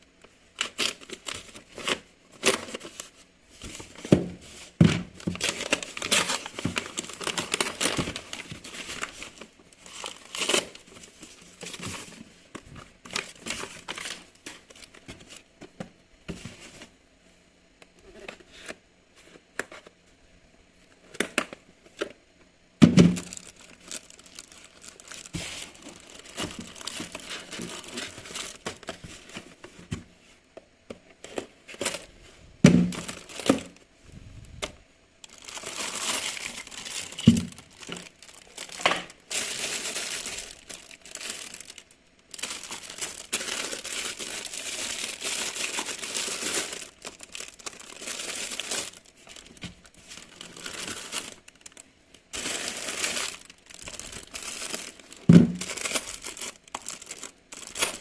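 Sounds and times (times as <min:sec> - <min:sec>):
packaging crinkling and tearing: 0:00.5 - 0:15.5, 0:23.0 - 0:29.8, 0:32.8 - 0:33.8, 0:34.6 - 0:58.0.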